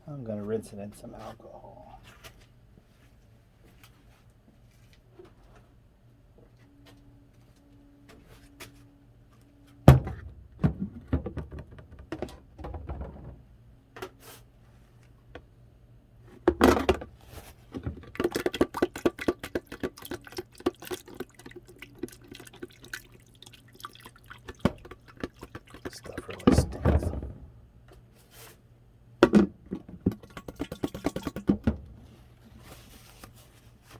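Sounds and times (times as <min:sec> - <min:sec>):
liquid splashing and dripping: 0:18.1 - 0:27.2, 0:30.1 - 0:31.7
container knocking down: 0:25.8 - 0:27.6.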